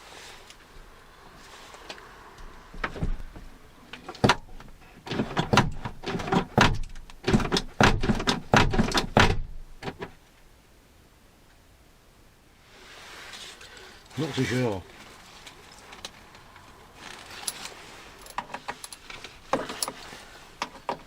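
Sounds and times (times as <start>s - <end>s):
hands clicking and knocking on door: 5.2s - 10.0s.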